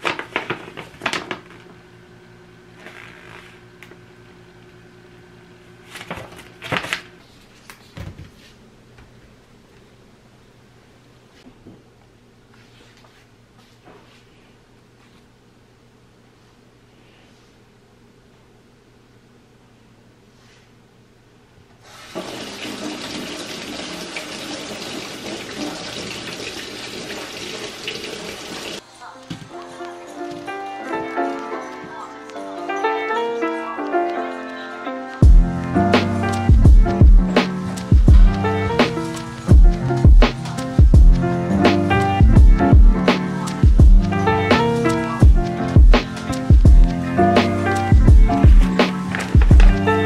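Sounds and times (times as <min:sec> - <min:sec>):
electrical hum: 0:00.0 - 0:34.1, 0:35.2 - 0:50.0
tap water running into sink: 0:21.9 - 0:28.8.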